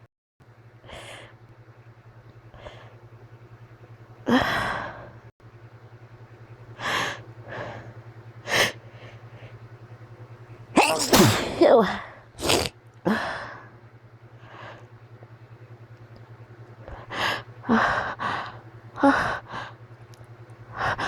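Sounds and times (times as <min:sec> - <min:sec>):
person gasping breaths: 0:04.3 - 0:05.2, 0:16.9 - 0:19.8, 0:20.8 - 0:21.0
person sneezing: 0:10.8 - 0:12.7.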